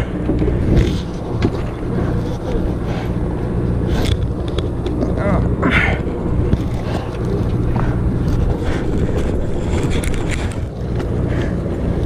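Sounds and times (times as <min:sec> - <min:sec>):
boat engine drone: 0:00.0 - 0:12.0
wind buffeting microphone: 0:00.0 - 0:12.0.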